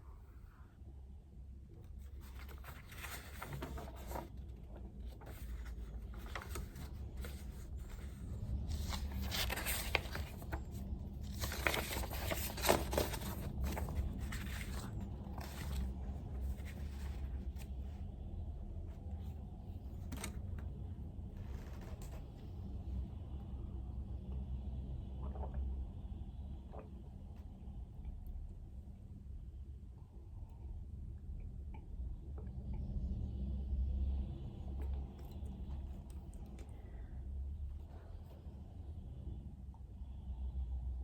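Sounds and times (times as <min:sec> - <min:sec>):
steady low hum: 0:00.0 - 0:41.0
paper rustling: 0:02.0 - 0:17.9, 0:19.9 - 0:20.6.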